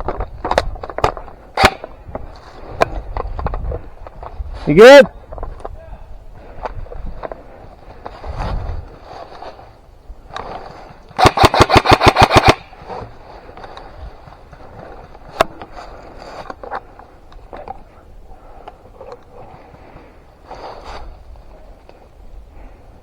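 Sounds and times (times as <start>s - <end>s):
faint rustling: 0.0s - 11.2s, 12.7s - 23.0s
airsoft gun rapid shots: 11.2s - 12.7s.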